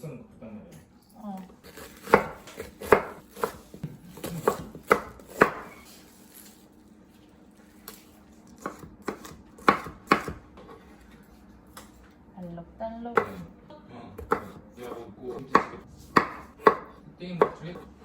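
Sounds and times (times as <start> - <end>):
knife chopping on cutting board: 1.7 - 5.8, 8.6 - 10.8, 13.2 - 13.4, 14.2 - 17.9.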